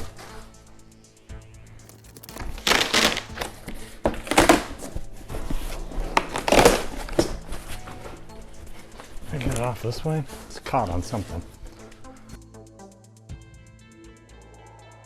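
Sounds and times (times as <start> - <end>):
quiet background music: 0.0 - 15.0
packaging rustling and tearing: 1.8 - 8.1.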